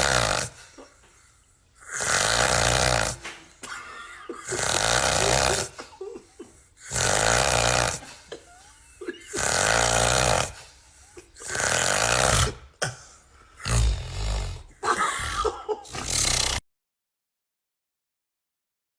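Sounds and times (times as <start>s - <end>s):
quiet breathing: 0.0s - 2.1s, 10.4s - 11.5s
person snoring: 0.0s - 3.3s, 4.3s - 16.6s.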